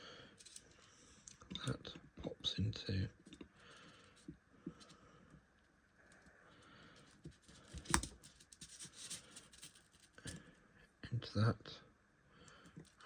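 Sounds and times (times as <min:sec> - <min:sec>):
small parts clicking and tapping: 0:07.0 - 0:10.4.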